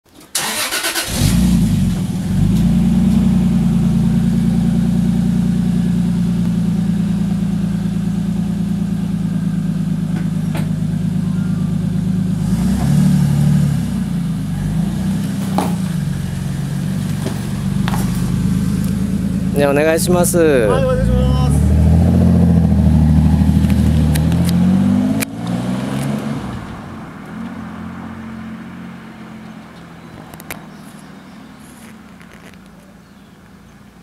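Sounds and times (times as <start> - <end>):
car engine idling: 0.4 - 25.2
engine revving: 0.4 - 29.0.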